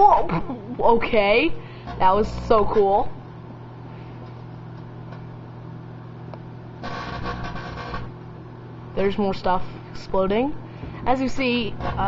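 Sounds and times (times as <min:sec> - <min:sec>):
microwave oven humming: 0:00.0 - 0:12.0
buzzing crackle of sparks: 0:06.8 - 0:08.2.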